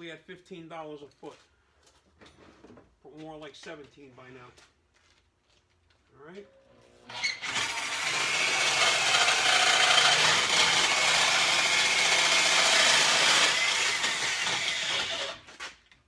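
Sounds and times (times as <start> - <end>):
electric drill cutting metal tube: 7.1 - 15.6.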